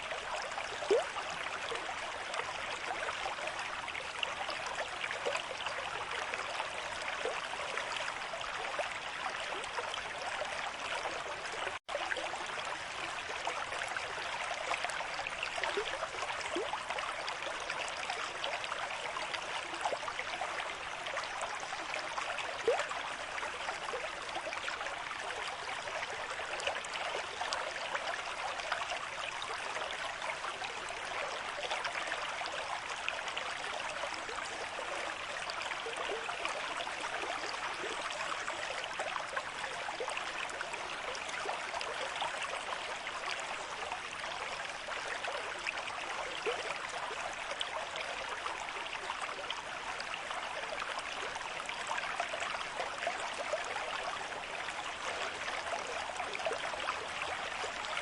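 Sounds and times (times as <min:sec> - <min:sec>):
stream babbling over stones: 0:00.0 - 0:58.0.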